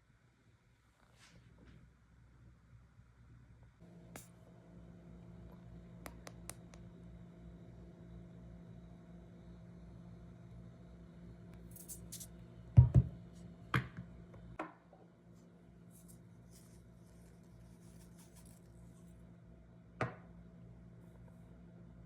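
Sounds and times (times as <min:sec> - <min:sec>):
steady low hum: 0:03.2 - 0:22.0
kitchen items knocking and clicking: 0:12.8 - 0:13.1.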